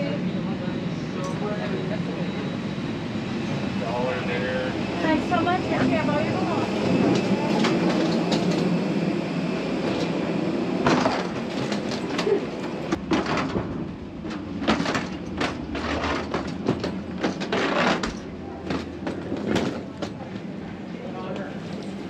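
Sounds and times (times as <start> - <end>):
aircraft cabin low rumble: 0.0 - 22.0.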